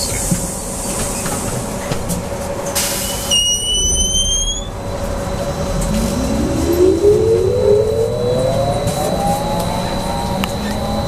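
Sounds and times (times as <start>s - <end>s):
steady bus interior hum: 0.0s - 11.0s
rising whistle: 3.3s - 11.0s.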